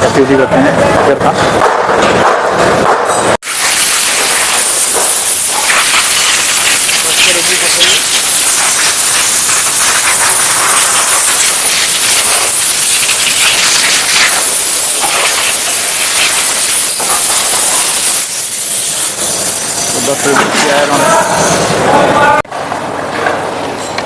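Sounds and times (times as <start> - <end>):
steady hissing noise: 3.4 - 22.4.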